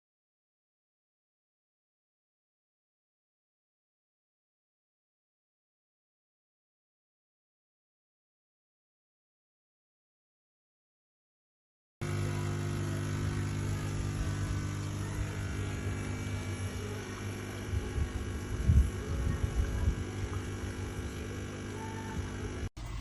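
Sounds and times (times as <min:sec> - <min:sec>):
coffee grinder motor humming: 0:12.0 - 0:23.0.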